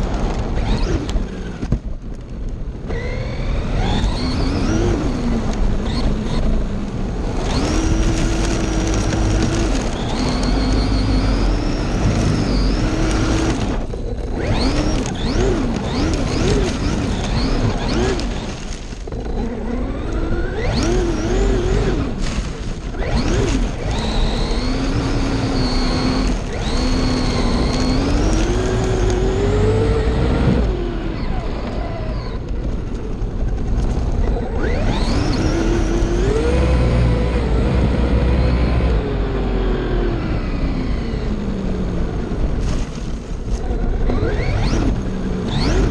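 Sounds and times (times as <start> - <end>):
steady rumbling noise: 0.0 - 45.9
rc car motor whining: 0.4 - 1.7, 2.9 - 32.6, 34.2 - 39.0, 43.6 - 45.9.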